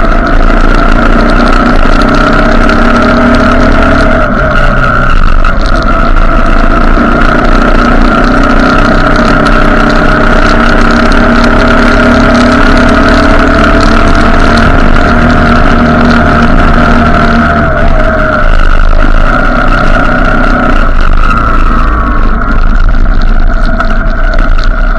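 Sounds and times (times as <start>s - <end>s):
motorcycle engine running: 0.0s - 24.9s.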